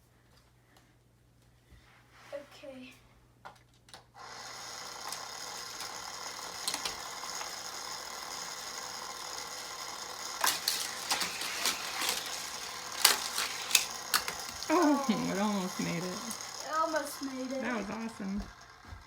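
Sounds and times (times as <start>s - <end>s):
toy car clattering on plastic track: 3.9s - 18.8s
toy track booster motor whirring: 4.2s - 19.0s.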